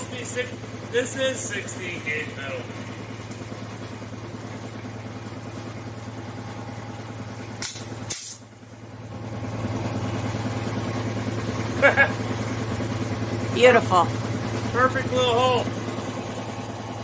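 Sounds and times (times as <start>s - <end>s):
engine running air compressor: 0.0s - 17.0s
pneumatic punch air blasts: 7.6s - 8.5s.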